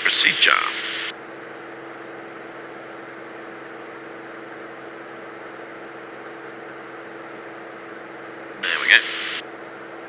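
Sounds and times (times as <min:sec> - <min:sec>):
aircraft engine and propeller drone: 0:00.0 - 0:10.0.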